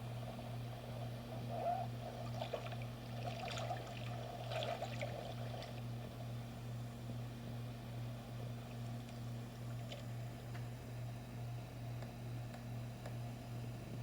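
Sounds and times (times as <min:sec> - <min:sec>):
water trickling and splashing: 0:02.2 - 0:06.1.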